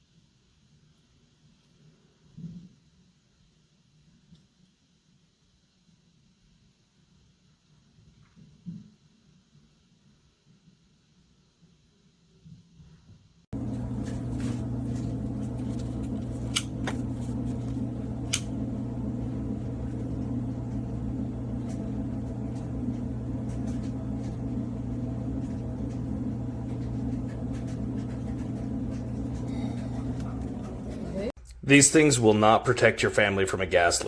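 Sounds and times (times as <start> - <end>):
low machine hum with hiss: 13.6 - 34.0.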